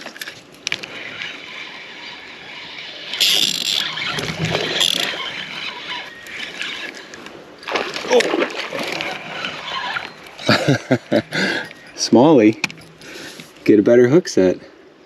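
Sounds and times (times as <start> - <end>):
fishing line hissing off reel: 0.7 - 7.2, 8.8 - 10.6.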